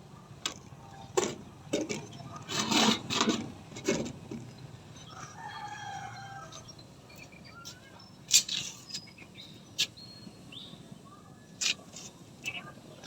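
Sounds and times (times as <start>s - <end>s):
rooster crowing: 5.0s - 6.7s
small bird chirps: 5.0s - 13.0s.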